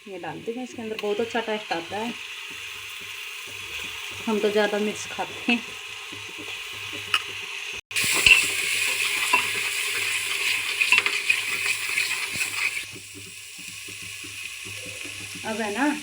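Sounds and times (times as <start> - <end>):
spices sizzling in hot oil: 0.0 - 16.0
spoon clicking and scraping: 8.1 - 13.0.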